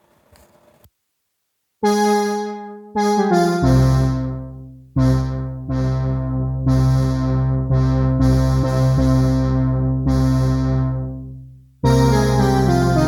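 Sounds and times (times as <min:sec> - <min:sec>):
synthesizer chords: 0:01.8 - 0:13.0
deep synth bass: 0:03.6 - 0:13.0.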